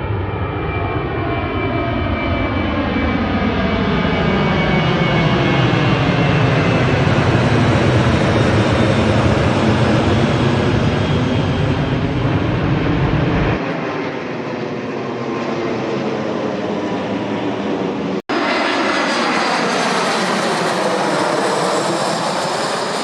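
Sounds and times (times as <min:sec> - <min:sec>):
airplane engines running loudly: 0:00.0 - 0:23.0
whine gliding in pitch: 0:08.6 - 0:23.0.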